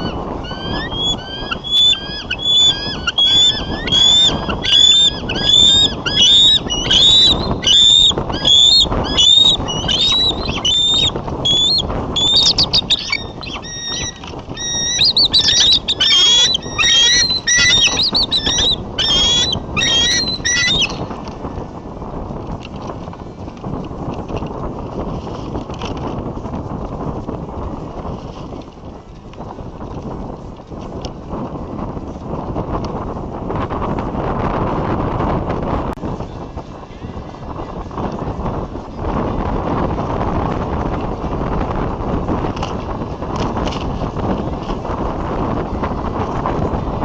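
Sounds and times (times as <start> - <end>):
eagles calling: 0.0 - 21.0
wind noise on microphone: 0.0 - 47.0.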